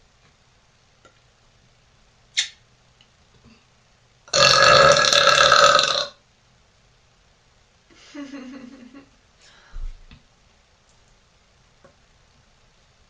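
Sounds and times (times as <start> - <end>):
woman burping: 4.4 - 6.1.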